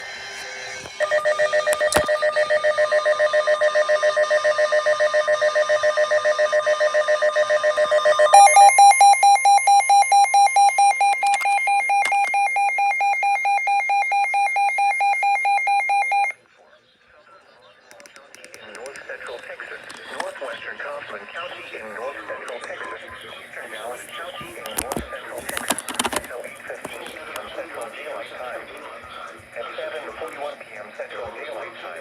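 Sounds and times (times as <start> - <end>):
electronic alert tone beeping: 8.3 - 16.4.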